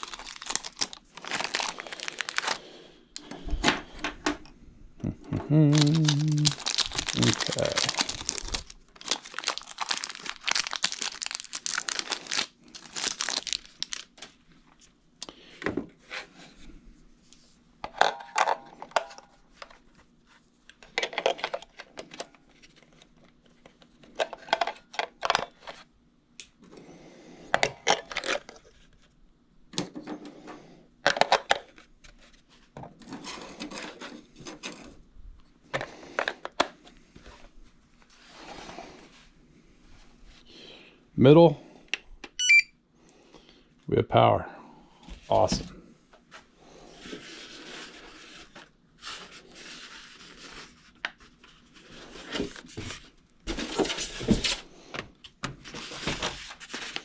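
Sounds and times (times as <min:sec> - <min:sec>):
plastic packaging crinkling: 0:00.0 - 0:02.7, 0:05.7 - 0:14.4
plastic parts clicking and clattering: 0:20.7 - 0:23.0, 0:23.6 - 0:25.8, 0:27.6 - 0:28.8, 0:31.0 - 0:31.8.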